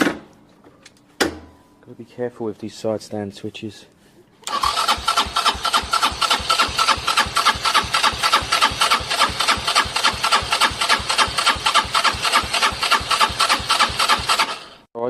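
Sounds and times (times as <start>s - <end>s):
moped engine idling: 4.8s - 14.7s.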